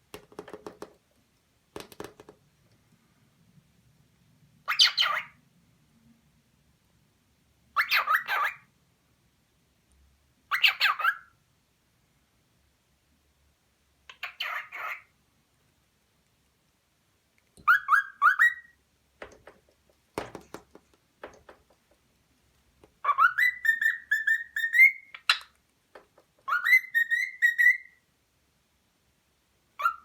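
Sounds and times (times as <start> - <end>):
cockatiel whistling: 17.6 - 18.8, 23.0 - 25.4, 26.5 - 28.0, 29.8 - 30.0.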